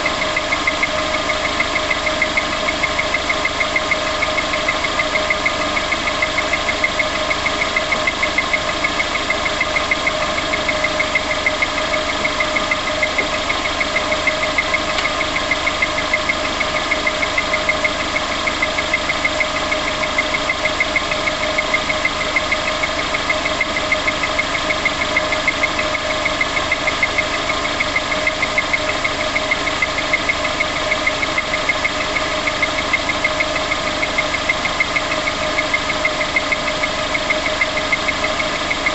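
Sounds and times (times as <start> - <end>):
car engine idling: 0.0 - 38.9
rapid engine tapping: 0.0 - 38.9.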